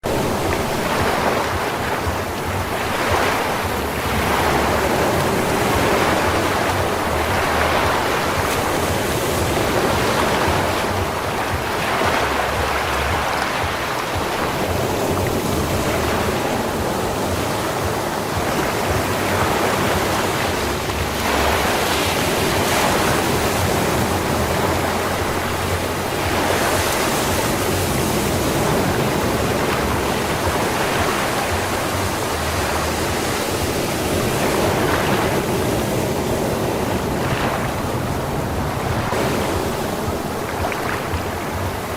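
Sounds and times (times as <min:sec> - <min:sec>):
sea waves breaking on sand: 0:00.0 - 0:41.9.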